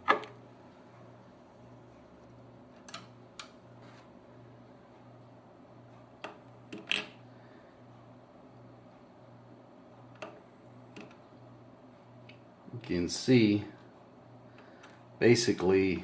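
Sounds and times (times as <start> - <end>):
turntable low pulsing hum: 0.0 - 16.0
small mechanical clicks: 2.8 - 3.6.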